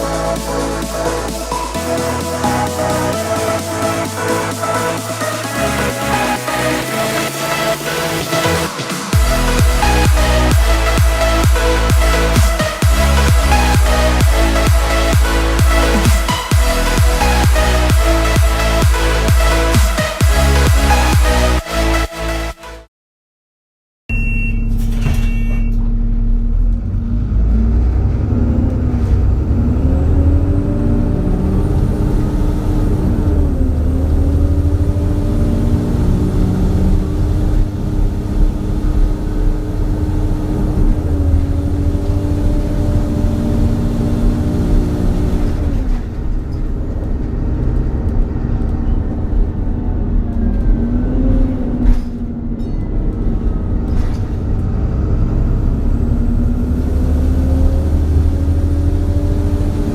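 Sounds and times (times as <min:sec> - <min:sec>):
bus engine revving: 0:00.0 - 0:22.6, 0:25.8 - 0:59.9
short high beep: 0:24.1 - 0:25.8.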